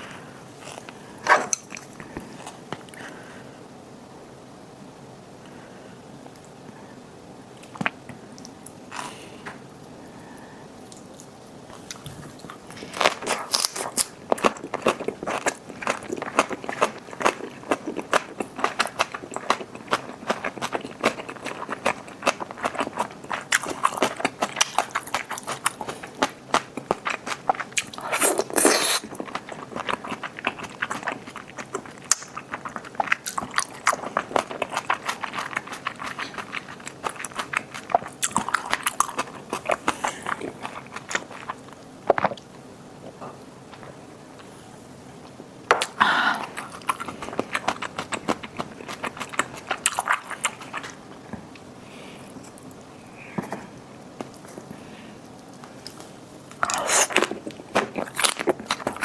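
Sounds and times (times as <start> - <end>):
crunchy biting and chewing: 10.9 - 42.4, 45.8 - 51.1, 55.6 - 59.0.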